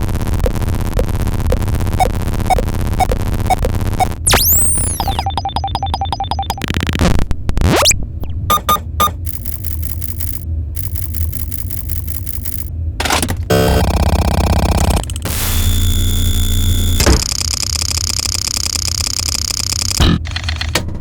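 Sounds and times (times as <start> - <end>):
rapid electronic beeping: 0.0 - 12.7, 13.5 - 20.2
low background hum: 0.1 - 21.0
electronic pitch sweeps: 0.4 - 6.9, 9.3 - 12.7
computer processing chatter: 0.4 - 7.0, 9.1 - 12.7
short beeps: 2.0 - 6.6.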